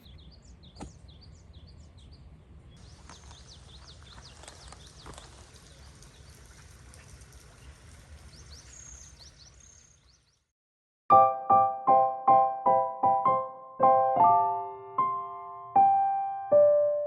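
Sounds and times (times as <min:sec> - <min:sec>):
birds chirping: 0:00.0 - 0:10.5.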